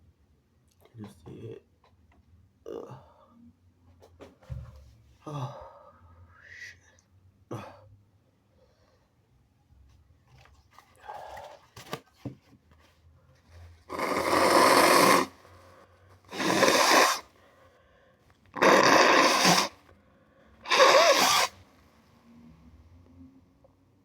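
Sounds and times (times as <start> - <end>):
person blowing nose: 13.9 - 15.4, 16.3 - 17.3, 18.6 - 19.8, 20.6 - 21.6.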